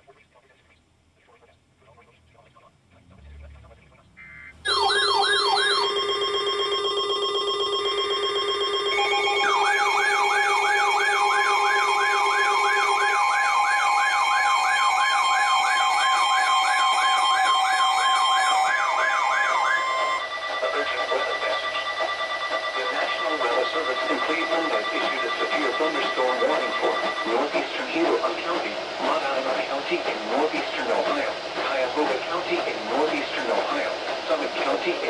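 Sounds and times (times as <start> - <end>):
steady electronic alert tones: 3.6 - 33.7
siren-like yelp sweeping downward: 8.2 - 27.3.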